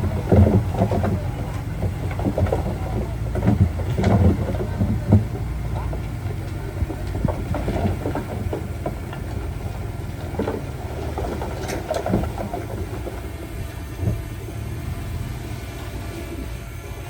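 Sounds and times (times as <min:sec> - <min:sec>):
metal clanks and knocks: 0:00.0 - 0:13.4
diesel engine running: 0:00.0 - 0:17.0.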